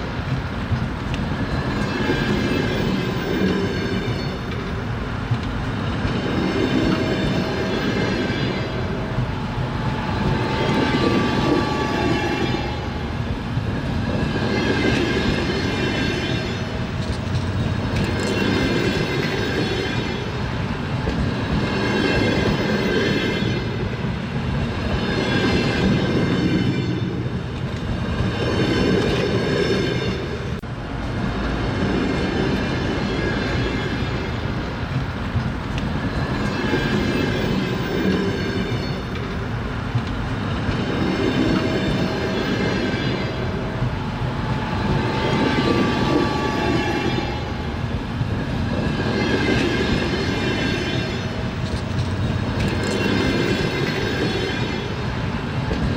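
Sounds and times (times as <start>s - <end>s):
train wheels clattering on rails: 0.0s - 55.9s
metallic wheel squeal: 9.4s - 13.8s, 44.1s - 51.2s.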